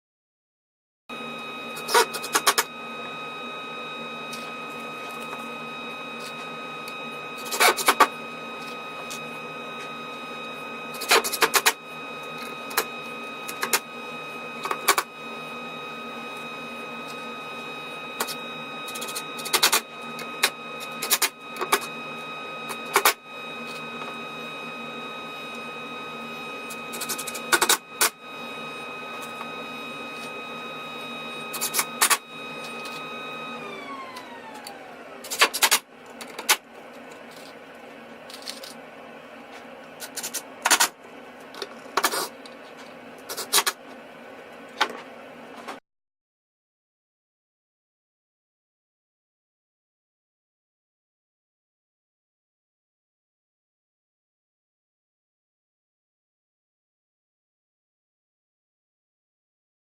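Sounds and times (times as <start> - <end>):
small electric motor whine: 1.1 - 44.6.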